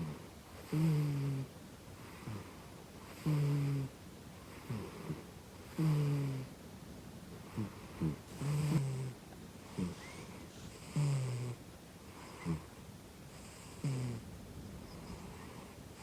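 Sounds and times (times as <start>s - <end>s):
cat snoring: 0.0s - 1.5s, 2.1s - 3.9s, 4.5s - 6.5s, 7.5s - 12.7s, 13.3s - 14.3s, 14.9s - 16.0s
cat snorting: 7.5s - 11.6s.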